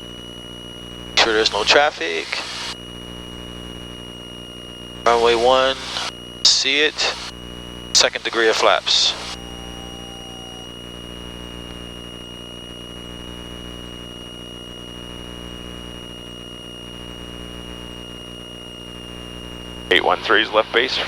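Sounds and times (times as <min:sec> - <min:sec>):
constant high whine: 0:00.0 - 0:21.0
faint short whine: 0:07.0 - 0:12.7.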